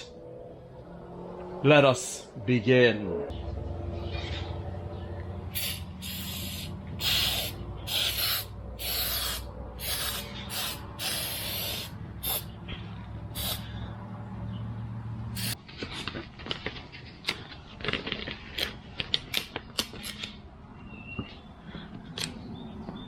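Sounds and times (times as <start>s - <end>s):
aerosol spray hissing: 5.6s - 12.5s, 13.4s - 13.6s, 15.4s - 15.6s.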